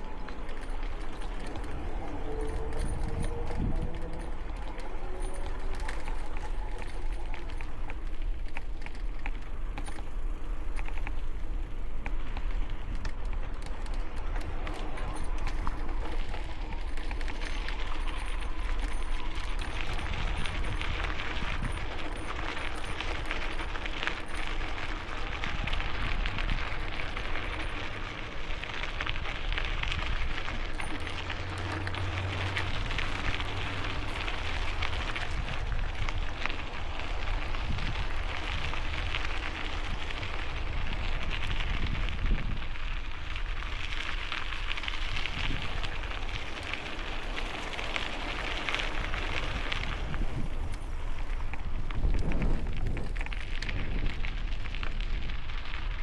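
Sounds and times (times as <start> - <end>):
wind buffeting microphone: 0.0 - 56.0
wind hiss on microphone: 32.2 - 56.0.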